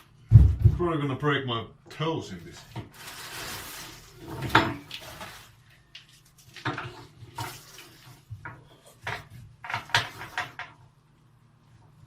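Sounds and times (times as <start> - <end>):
hard objects clattering and knocking: 4.2 - 5.4, 8.3 - 10.8.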